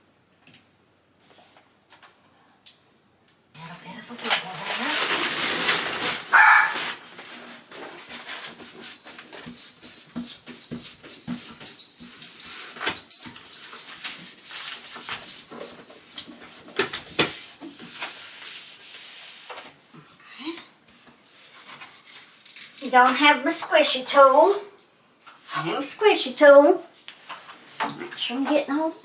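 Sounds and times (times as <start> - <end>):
rustling and tapping from handling: 4.1 - 18.8
small dog barking and whimpering: 6.3 - 6.9.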